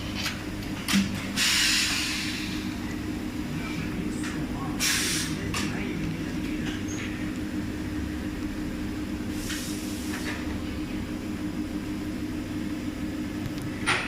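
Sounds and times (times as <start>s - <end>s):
short hisses: 4.8s - 5.4s.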